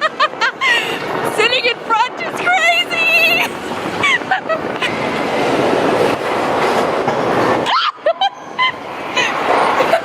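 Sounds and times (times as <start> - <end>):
roller coaster rolling on track: 0.0 - 10.0
wind rushing: 0.2 - 7.8.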